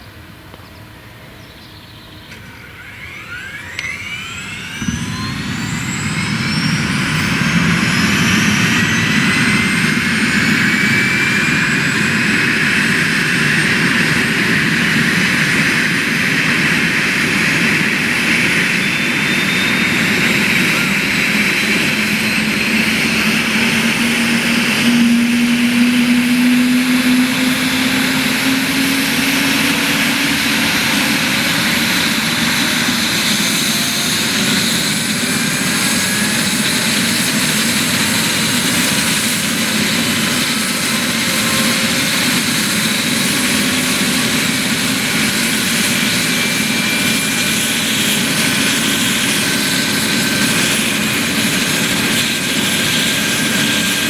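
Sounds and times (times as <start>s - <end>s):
helicopter running with turbine whine: 0.0s - 54.0s.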